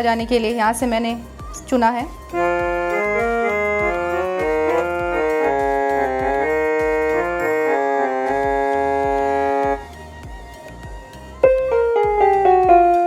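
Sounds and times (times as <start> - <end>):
keyboard harmonium tone melody: 2.3 - 9.8, 11.4 - 13.0.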